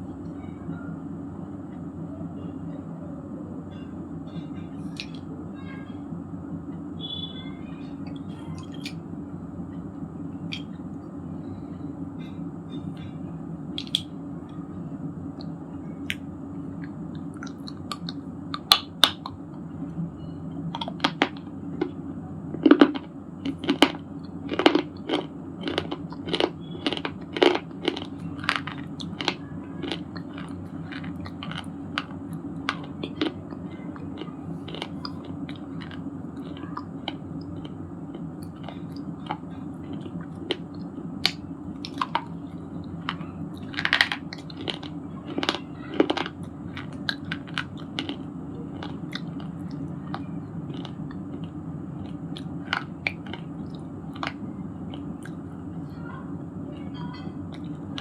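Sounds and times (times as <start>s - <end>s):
low background hum: 0.0s - 58.0s
stone crunching in chewing: 22.6s - 42.3s, 43.0s - 53.5s.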